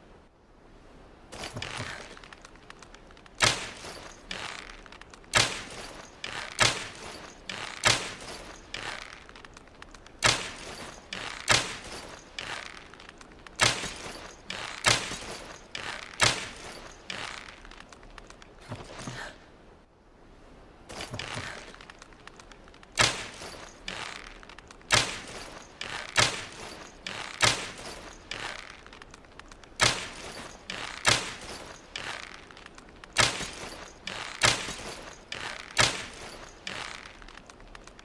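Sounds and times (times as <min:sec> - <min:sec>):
arrow shots snapping: 0:05.3 - 0:09.0, 0:10.2 - 0:12.8, 0:23.0 - 0:23.6.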